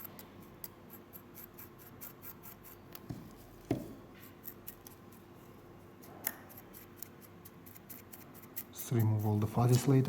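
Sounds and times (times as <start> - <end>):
tweezers scratchy ticks: 6.2 - 9.9.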